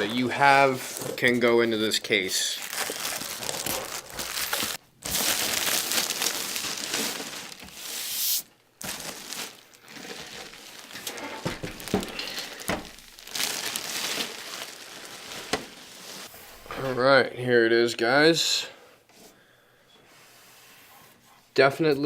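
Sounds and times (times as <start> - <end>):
packaging rustling and crinkling: 0.0 - 16.8.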